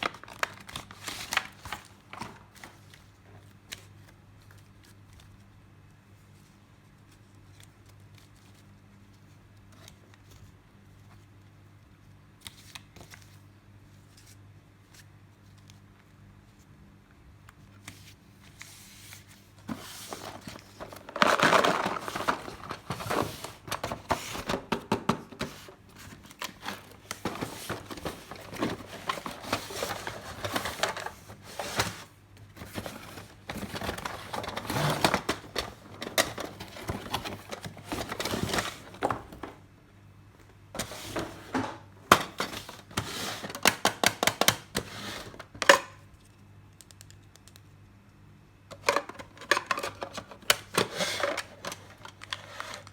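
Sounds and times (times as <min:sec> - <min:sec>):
plastic packaging crinkling: 0:00.0 - 0:03.0, 0:19.4 - 0:24.8, 0:25.4 - 0:39.6.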